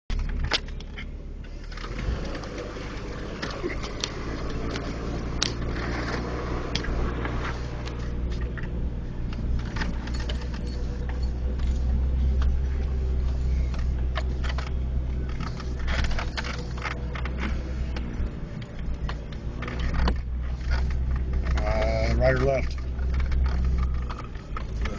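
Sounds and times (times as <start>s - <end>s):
vehicle engine at low revs: 0.1s - 24.9s.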